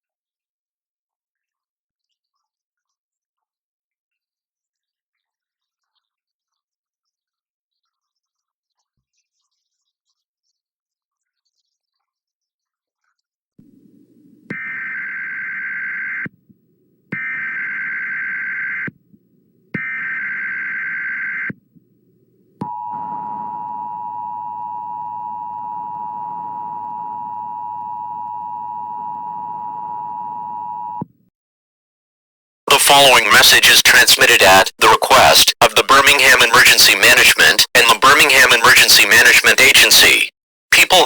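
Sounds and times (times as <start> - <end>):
two-tone attention signal: 22.6 - 31.0.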